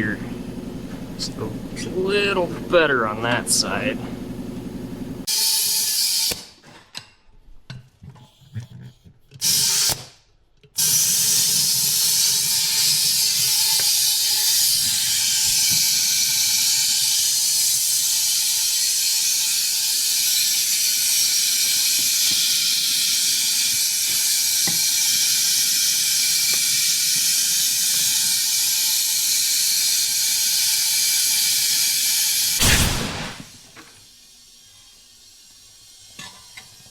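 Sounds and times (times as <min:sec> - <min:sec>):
compressed air hissing into tire: 0:32.6 - 0:33.7.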